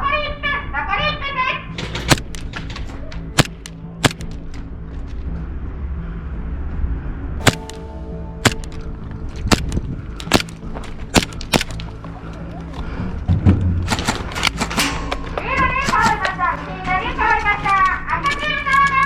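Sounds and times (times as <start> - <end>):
airsoft guns firing: 1.8 - 4.4, 7.4 - 12.0, 13.9 - 19.0.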